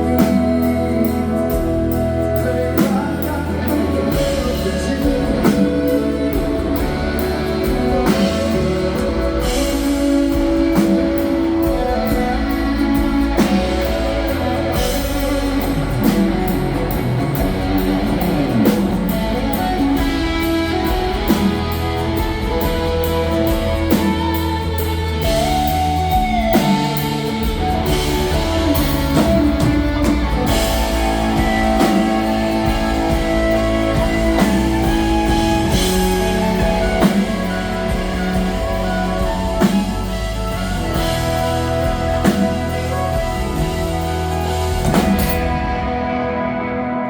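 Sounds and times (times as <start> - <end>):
steady drum beat: 0.0 - 46.4
country-rock band playing a waltz: 0.0 - 47.0
guitars: 0.0 - 47.0.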